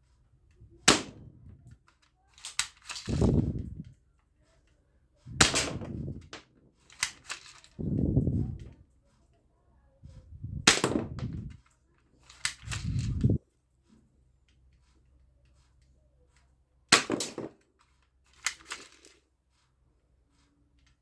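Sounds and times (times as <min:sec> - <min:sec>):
toy gun gunshot effects: 0:00.9 - 0:01.3, 0:05.4 - 0:06.3, 0:10.7 - 0:11.5, 0:17.0 - 0:17.5.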